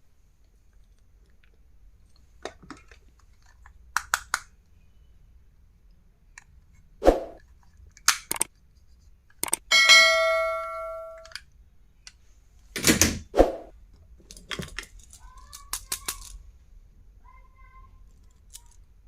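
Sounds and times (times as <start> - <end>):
stationery clicks and taps: 8.1 - 8.5, 9.4 - 9.7.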